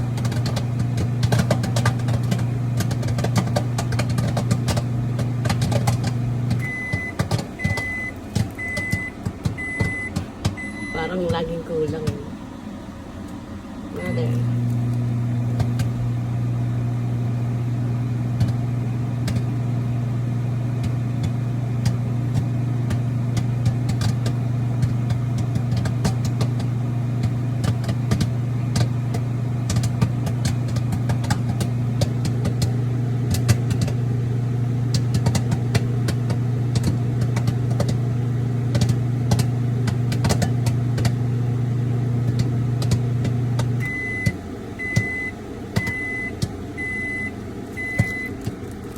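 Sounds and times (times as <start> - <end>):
popcorn popping: 0.0 - 12.4, 13.2 - 48.9
microwave oven beeping: 0.0 - 48.9
microwave oven humming: 0.0 - 48.9.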